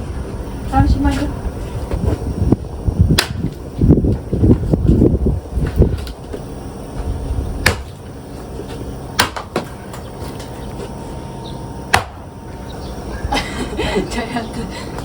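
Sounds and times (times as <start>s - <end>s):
axe striking firewood: 3.2s - 3.5s, 7.6s - 8.0s, 9.2s - 9.7s, 11.9s - 12.2s.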